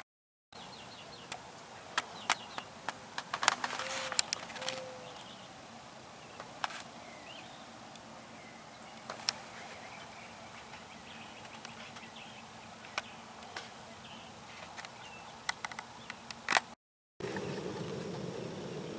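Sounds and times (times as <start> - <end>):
faint bird chirps: 3.6 - 16.3.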